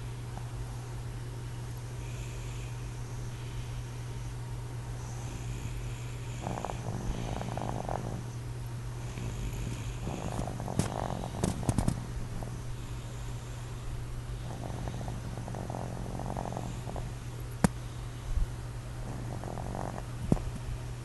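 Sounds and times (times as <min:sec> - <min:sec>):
person snoring: 0:05.1 - 0:08.3, 0:09.0 - 0:13.2, 0:14.4 - 0:17.2, 0:19.0 - 0:20.1.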